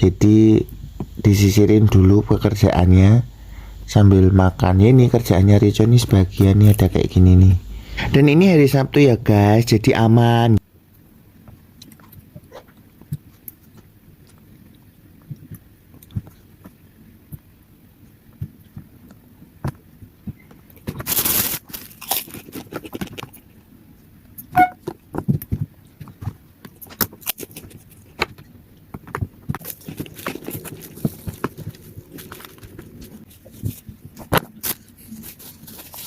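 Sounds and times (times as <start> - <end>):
person chewing food: 21.8 - 23.6, 25.4 - 28.4, 29.5 - 33.8.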